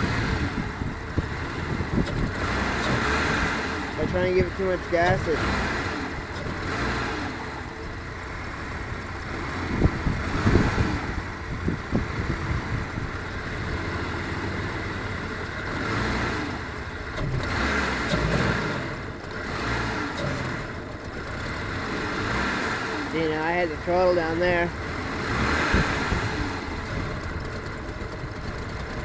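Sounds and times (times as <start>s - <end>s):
car engine sputtering: 0.0s - 29.0s
engine backfire pops: 0.1s - 3.6s, 17.1s - 21.4s.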